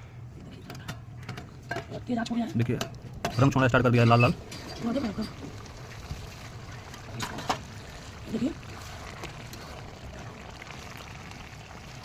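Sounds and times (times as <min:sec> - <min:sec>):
curry bubbling in a pot: 0:04.2 - 0:12.0.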